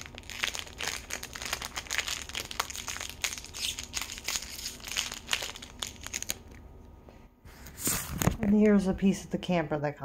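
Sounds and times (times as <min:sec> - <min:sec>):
plastic bag crinkling: 0:00.0 - 0:06.6.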